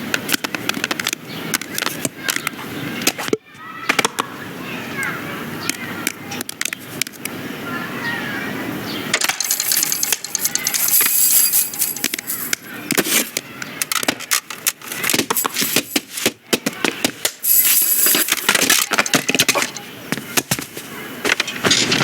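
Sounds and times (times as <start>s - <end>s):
hard objects clicking and clattering: 9.1s - 20.0s.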